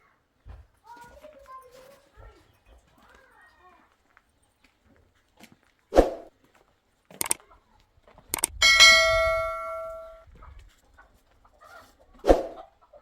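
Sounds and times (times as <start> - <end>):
sharp clicks: 7.2 - 7.4, 8.4 - 10.1
metal object struck ringing: 8.6 - 10.2.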